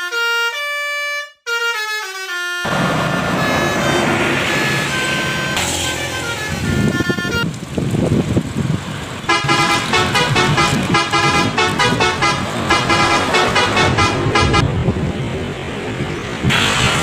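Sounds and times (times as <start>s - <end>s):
multi-tone bus horn tune: 0.0s - 7.6s, 9.3s - 14.9s
bus engine running: 2.6s - 17.0s.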